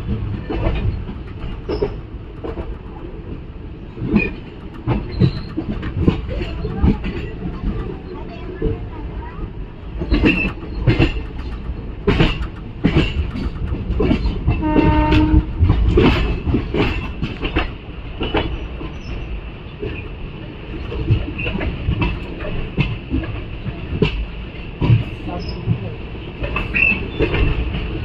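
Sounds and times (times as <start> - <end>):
wheels clacking over rail joints: 0.0 - 25.8, 26.4 - 28.0
train rumbling on track: 0.0 - 28.0
train horn blast: 14.5 - 15.8.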